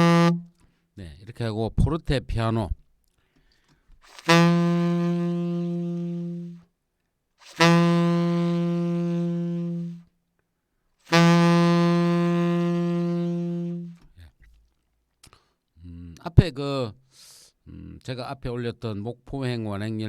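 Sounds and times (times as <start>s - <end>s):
tenor saxophone long notes: 0.0s - 0.6s, 4.0s - 6.7s, 7.4s - 10.1s, 11.1s - 14.0s.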